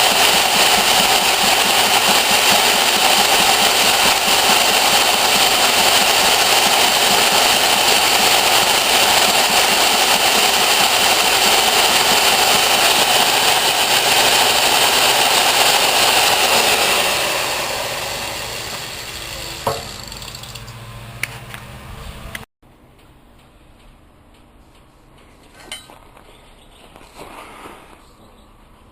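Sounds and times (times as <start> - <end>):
machine motor running: 0.0 - 22.5.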